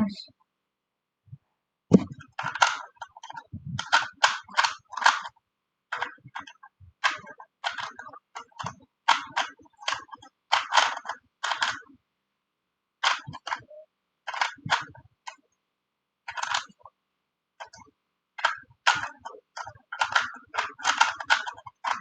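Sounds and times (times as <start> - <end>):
puzzle cube clacking: 1.9 - 11.9, 13.0 - 13.7, 14.3 - 15.4, 16.3 - 16.9, 17.6 - 22.0.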